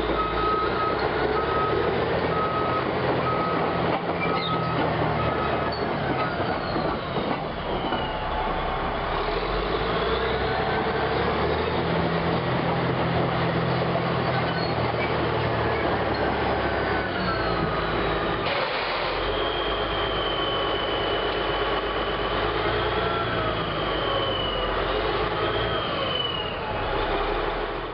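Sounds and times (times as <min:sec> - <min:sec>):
diesel engine droning: 0:00.0 - 0:27.9
undercarriage squeals: 0:02.3 - 0:08.7, 0:14.2 - 0:16.3, 0:16.9 - 0:17.8.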